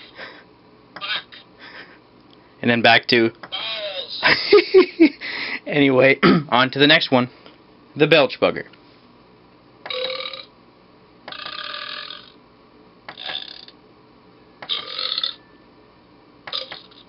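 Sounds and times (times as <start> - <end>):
recorded belches from small speaker: 9.9 - 10.5, 11.3 - 12.4, 13.1 - 13.8, 14.7 - 15.4, 16.5 - 17.0.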